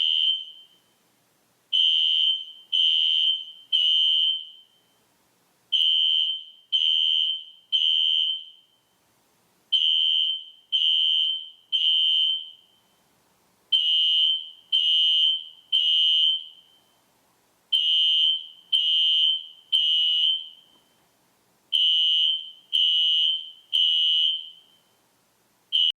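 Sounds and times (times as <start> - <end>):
fire alarm horn blasts: 0.0 - 0.9, 1.7 - 5.0, 5.7 - 8.9, 9.7 - 12.9, 13.7 - 17.0, 17.7 - 21.0, 21.7 - 25.0, 25.7 - 25.9.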